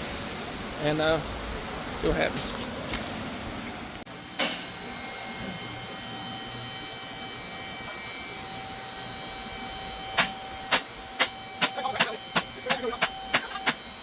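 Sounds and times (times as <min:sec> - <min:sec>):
sharp metallic clack: 0:10.2 - 0:13.8.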